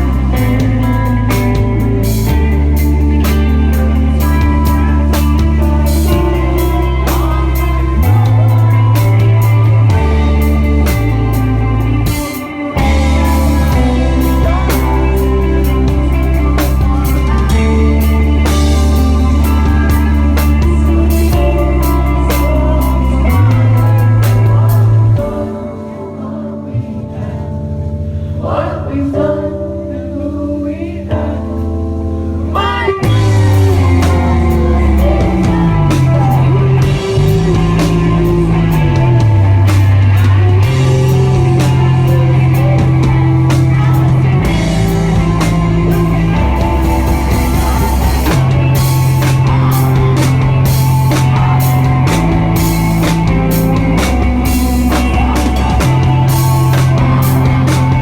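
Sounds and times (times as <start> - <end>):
bass sliding down in pitch: 0.0 - 25.5, 26.3 - 58.0
drums: 0.0 - 25.9, 31.1 - 58.0
live rock band playing: 0.0 - 26.4, 31.4 - 58.0.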